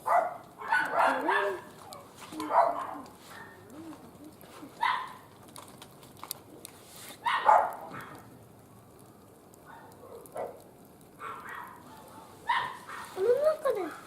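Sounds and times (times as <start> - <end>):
dog barking: 0.0 - 1.7, 2.4 - 3.6, 4.8 - 5.2, 7.2 - 8.3, 9.6 - 13.2, 13.8 - 14.0.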